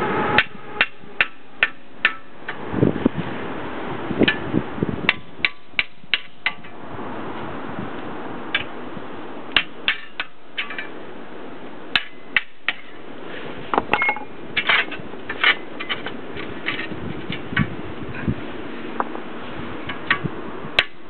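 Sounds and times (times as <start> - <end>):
steady background hiss: 0.0 - 21.0
metal tools clinking on metal: 13.9 - 16.9.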